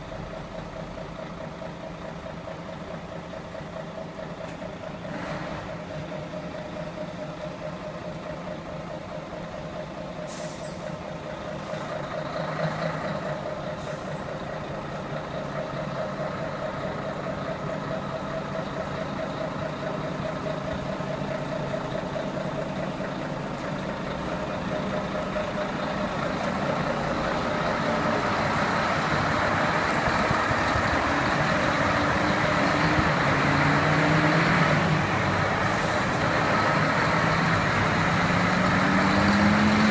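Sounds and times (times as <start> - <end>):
truck diesel engines running: 0.0 - 39.9
air brake hisses: 10.2 - 11.0, 13.8 - 14.3, 35.6 - 36.2.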